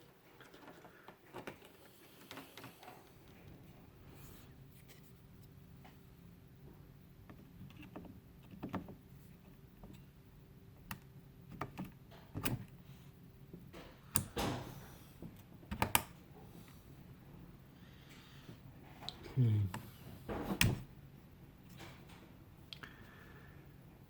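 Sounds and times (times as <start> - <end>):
faint steady hum: 0.0 - 24.0
memory modules clicking into slots: 13.8 - 14.6, 15.7 - 16.2.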